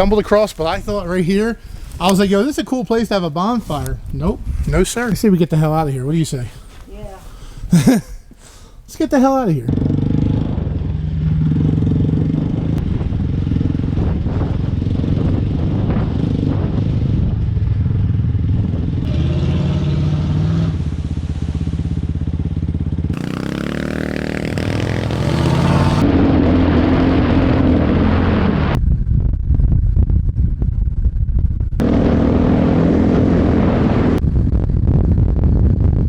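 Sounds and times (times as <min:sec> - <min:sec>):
vehicle engine revving: 0:09.7 - 0:17.1, 0:18.0 - 0:28.8, 0:31.8 - 0:34.2.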